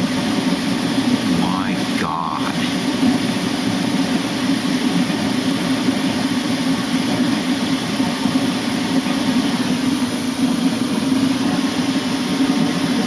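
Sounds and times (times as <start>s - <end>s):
furnace burner rumbling with hiss: 0.0s - 13.0s.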